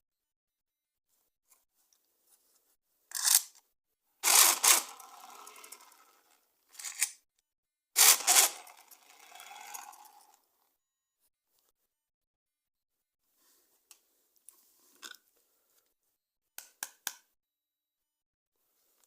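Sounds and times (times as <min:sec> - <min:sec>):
plastic toys clacking: 0:04.2 - 0:07.2, 0:08.0 - 0:10.4.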